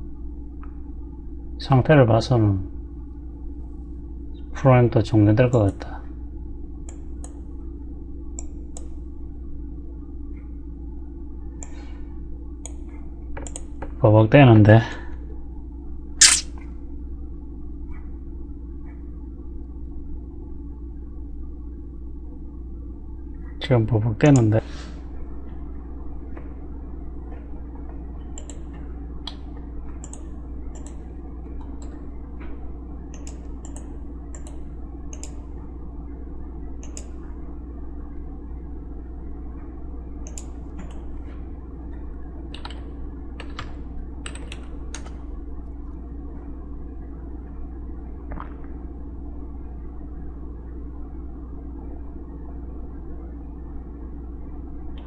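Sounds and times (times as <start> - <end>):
steady low hum: 0.0 - 55.0
computer keyboard clicking: 42.5 - 42.8, 43.4 - 45.2.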